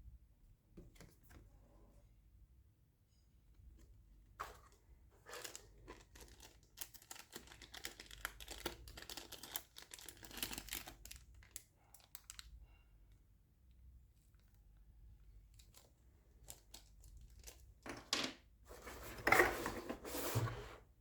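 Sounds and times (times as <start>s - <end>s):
packaging crinkling and rustling: 4.4s - 12.5s, 15.5s - 18.2s.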